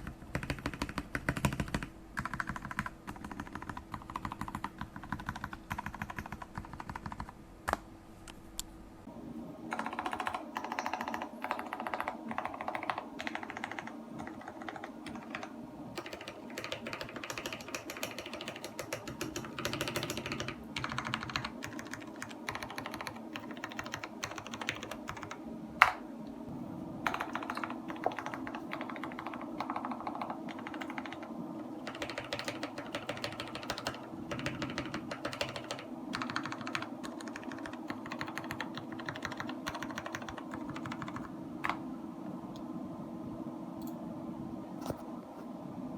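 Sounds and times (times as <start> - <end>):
mechanical keyboard key clacks: 31.9 - 41.8.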